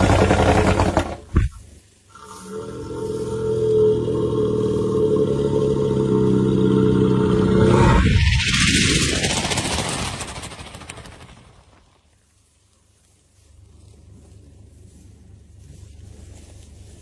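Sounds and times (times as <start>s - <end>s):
elephant snoring: 2.1s - 8.0s.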